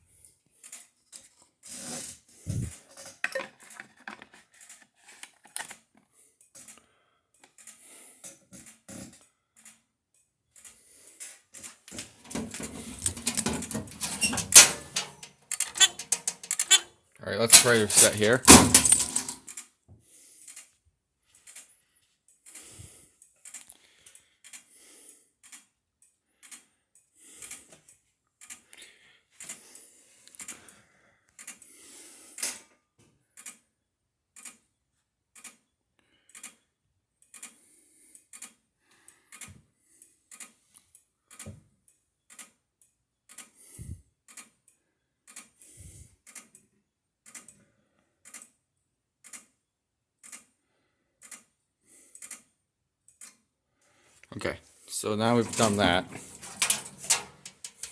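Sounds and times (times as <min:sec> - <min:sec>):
handling clatter: 0:12.0 - 0:16.9, 0:17.5 - 0:19.4, 0:55.2 - 0:57.9
faint steady ticking: 0:48.2 - 0:48.6, 0:51.2 - 0:52.5, 0:55.0 - 0:57.9.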